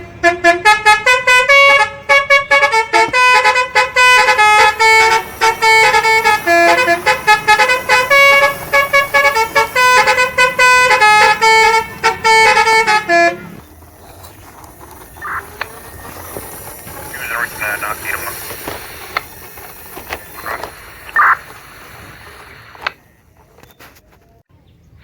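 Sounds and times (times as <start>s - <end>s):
toy car horn tune: 0.0s - 21.7s.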